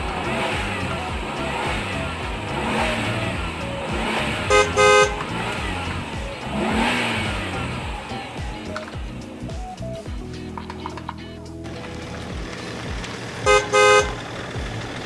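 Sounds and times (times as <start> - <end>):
background music with steady beat: 0.0 - 15.0
car horn short beeps: 4.0 - 5.8, 13.5 - 14.2.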